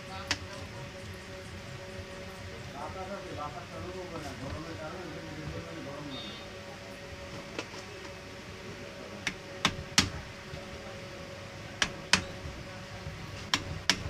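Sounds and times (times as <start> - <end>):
faint steady hum: 0.0 - 14.0
sharp taps and clicks: 9.2 - 10.2, 11.8 - 12.6, 13.5 - 14.0.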